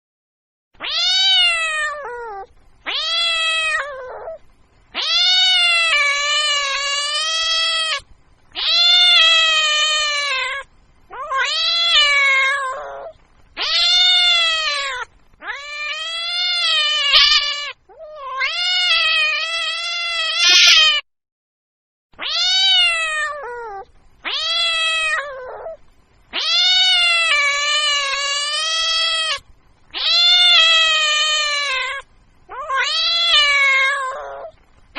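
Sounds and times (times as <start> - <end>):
cat meowing: 0.8 - 8.0, 8.6 - 21.0, 22.2 - 34.6.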